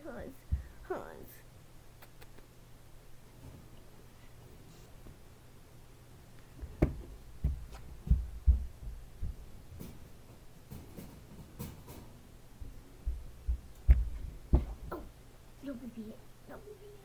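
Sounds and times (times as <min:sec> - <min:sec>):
faint clicks: 0:02.0 - 0:02.5
soft low thumps and knocks: 0:06.6 - 0:10.1, 0:12.6 - 0:15.0.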